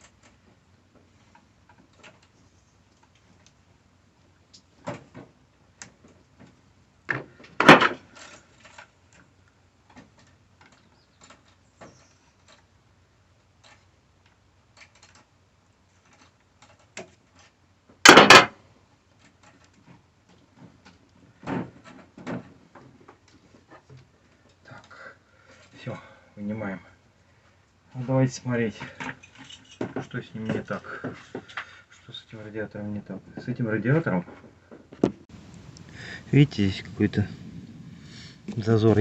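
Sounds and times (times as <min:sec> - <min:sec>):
loud clunks: 0:07.1 - 0:08.0, 0:18.1 - 0:18.5.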